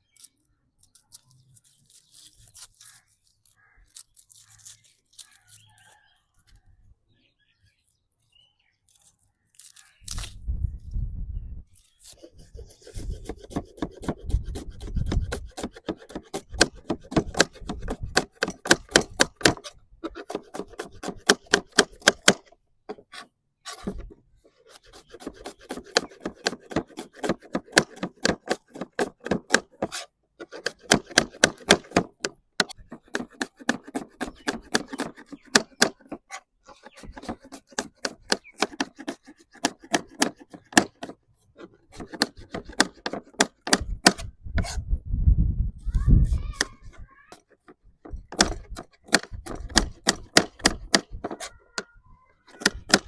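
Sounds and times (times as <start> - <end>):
knife chopping on cutting board: 12.8 - 22.5, 24.7 - 41.1, 41.9 - 44.8.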